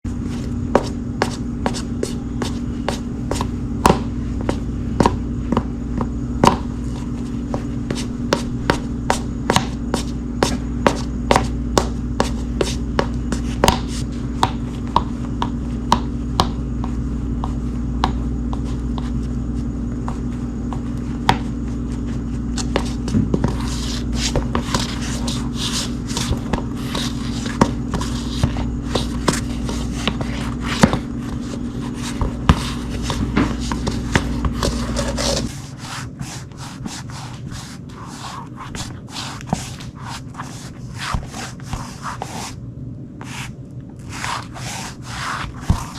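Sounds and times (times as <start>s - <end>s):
steady low hum: 0.0s - 45.9s
footsteps on hardwood floor: 0.2s - 35.5s.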